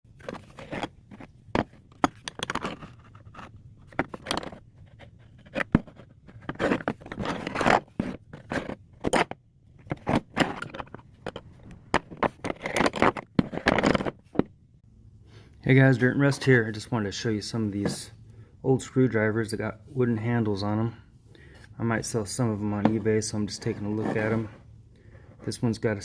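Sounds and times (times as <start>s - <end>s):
screwdrivers scraping: 0.2s - 14.2s.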